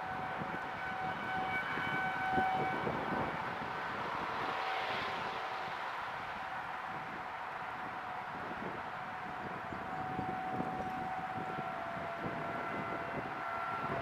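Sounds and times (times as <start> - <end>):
tornado warning siren: 0.0 - 14.0
rushing noise: 2.6 - 9.8.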